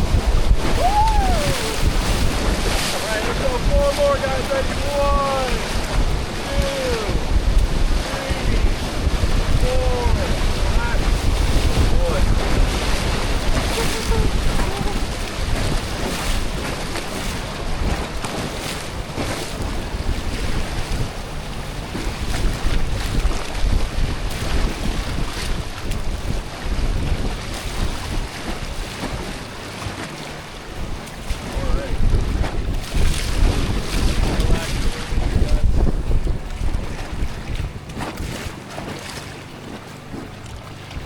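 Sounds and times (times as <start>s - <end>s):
river rapids rushing: 0.0s - 9.0s
rushing river water: 0.0s - 41.0s
wind buffeting microphone: 0.0s - 41.0s.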